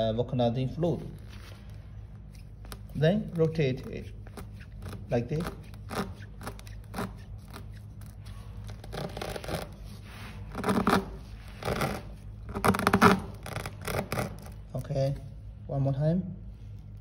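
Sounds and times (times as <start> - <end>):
steel reamer rasping against rubber: 2.2 - 14.6.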